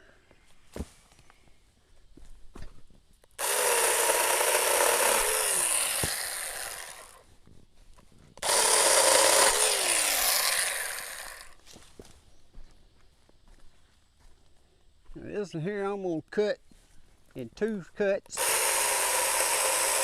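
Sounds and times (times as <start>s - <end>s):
mini chainsaw cutting wood: 3.4s - 7.2s, 8.4s - 11.6s, 18.3s - 20.0s.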